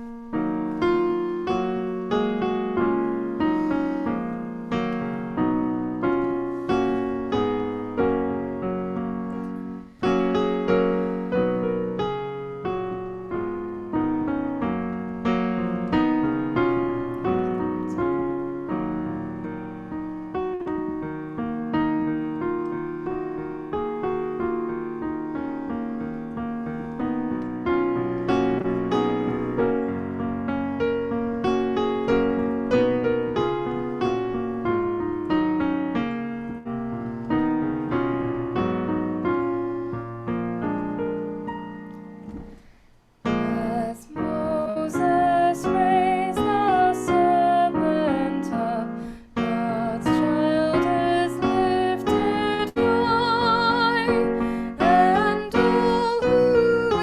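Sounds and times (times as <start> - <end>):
piano music: 0.0 - 57.0.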